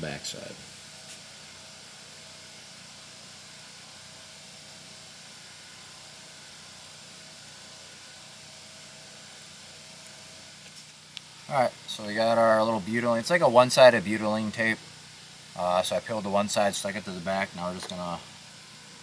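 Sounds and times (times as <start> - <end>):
steady hiss: 10.6 - 19.0.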